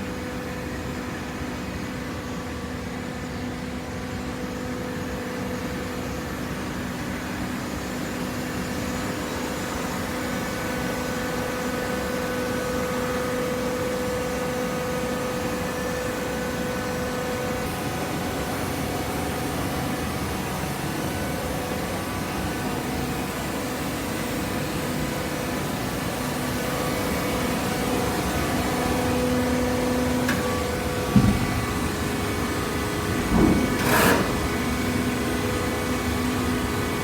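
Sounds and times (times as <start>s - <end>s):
baler machine hum: 26.2s - 37.0s.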